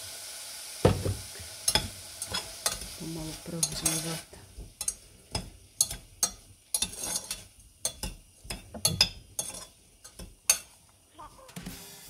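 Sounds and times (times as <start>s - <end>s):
spoon stirring fruit in a pot: 1.6s - 11.7s
spoon clinking against pot: 4.8s - 10.8s.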